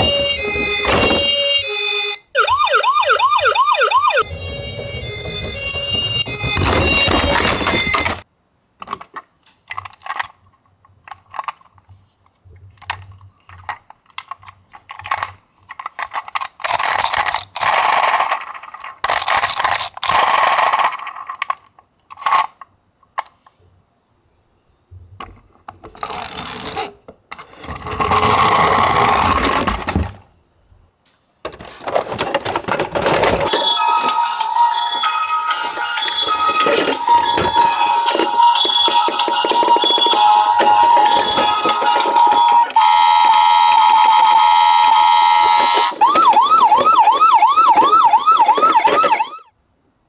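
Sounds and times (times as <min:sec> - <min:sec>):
toy car rolling down a slope: 0:04.2 - 0:08.2, 0:12.8 - 0:23.4, 0:25.7 - 0:30.2, 0:31.5 - 0:49.4
toy clicks and knocks: 0:04.2 - 0:08.2, 0:13.0 - 0:23.3, 0:35.6 - 0:49.4.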